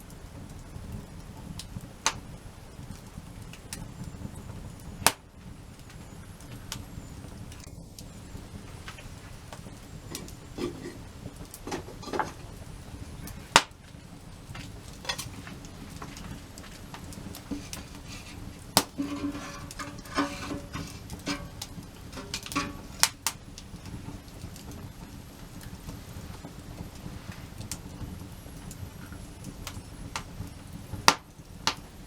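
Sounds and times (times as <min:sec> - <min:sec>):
hard objects knocking and clinking: 0:11.6 - 0:12.4, 0:15.0 - 0:15.4, 0:17.4 - 0:23.2.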